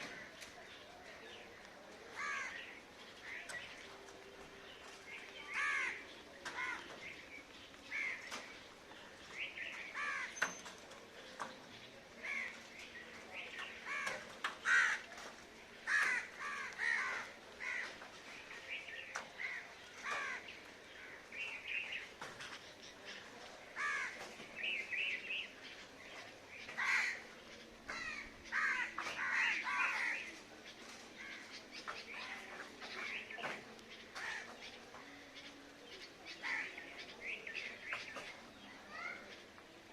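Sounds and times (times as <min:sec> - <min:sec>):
crows cawing: 0:02.2 - 0:03.4, 0:05.5 - 0:07.0, 0:09.9 - 0:10.4, 0:13.8 - 0:15.2, 0:15.8 - 0:18.0, 0:19.4 - 0:21.2, 0:23.8 - 0:24.2, 0:26.7 - 0:27.3, 0:27.9 - 0:30.3, 0:34.2 - 0:34.5.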